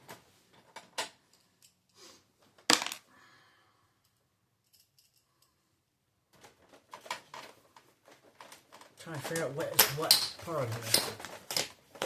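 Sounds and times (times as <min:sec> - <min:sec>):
parts clattering: 0:00.0 - 0:03.1, 0:06.3 - 0:12.0
plastic parts clicking: 0:06.4 - 0:12.0.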